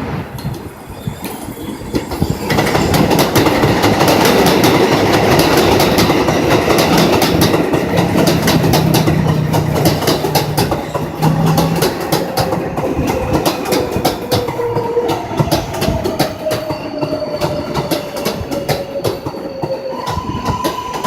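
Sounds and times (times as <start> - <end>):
train wheels clattering over rail joints: 0.3 - 21.0.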